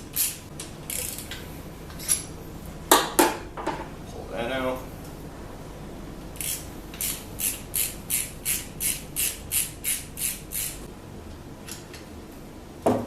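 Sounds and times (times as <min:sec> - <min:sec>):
ratchet wrench clicking: 0:00.1 - 0:01.4, 0:06.4 - 0:10.9.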